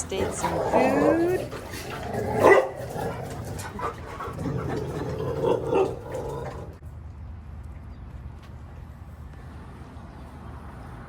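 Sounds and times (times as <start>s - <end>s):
dog barking and whining: 0.0s - 6.8s.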